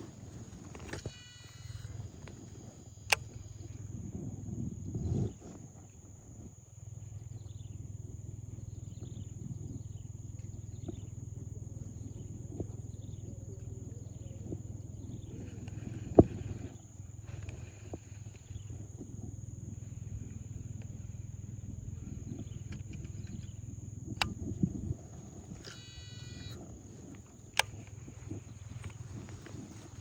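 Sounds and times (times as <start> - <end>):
high-pitched insect drone: 0.0 - 4.1, 6.8 - 30.0
sharp click: 0.6 - 2.5, 3.1 - 3.5, 24.2 - 24.6, 25.5 - 28.1.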